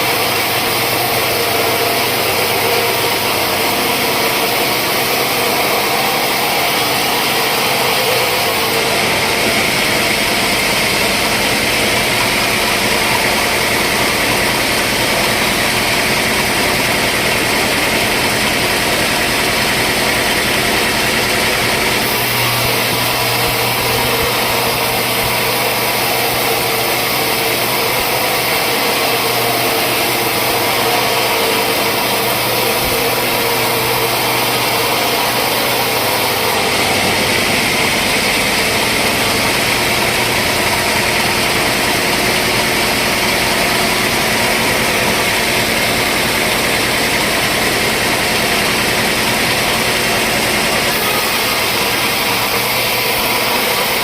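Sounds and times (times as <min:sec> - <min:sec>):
sawmill machinery running: 0:00.0 - 0:54.0.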